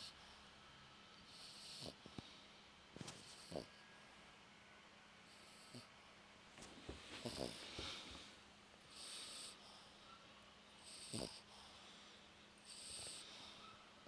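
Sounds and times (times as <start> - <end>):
pet snoring faintly: 1.2 - 2.0, 3.1 - 3.8, 5.3 - 5.9, 7.1 - 8.2, 8.9 - 9.9, 10.8 - 11.8, 12.6 - 13.6
low snorts: 3.1 - 3.7, 7.1 - 8.0, 10.9 - 11.5.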